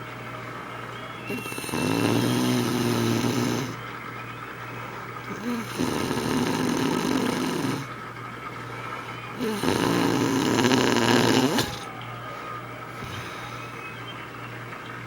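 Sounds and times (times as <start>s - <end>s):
woman snoring loudly: 1.3s - 3.8s, 5.3s - 8.0s, 9.0s - 11.9s, 12.9s - 13.8s.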